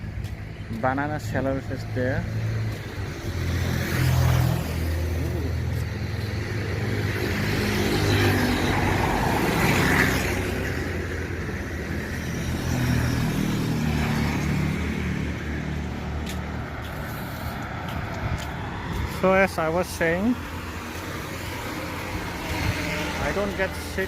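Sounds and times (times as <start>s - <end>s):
vehicle engines passing: 0.0s - 24.0s.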